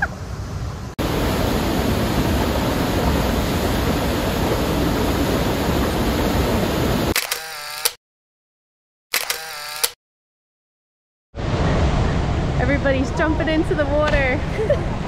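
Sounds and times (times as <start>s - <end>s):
waterfall rushing water: 1.0s - 7.1s.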